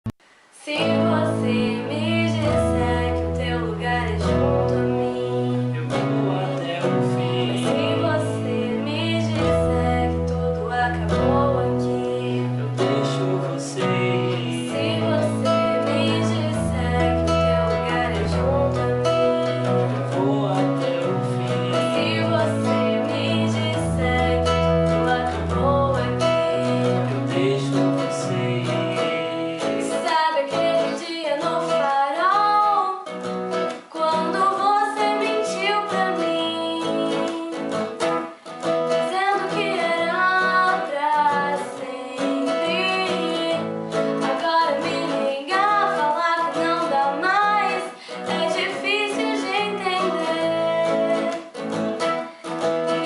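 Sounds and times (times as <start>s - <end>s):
acoustic guitar: 0.1s - 53.0s
woman singing: 0.6s - 53.0s
keyboard playing: 0.8s - 29.8s.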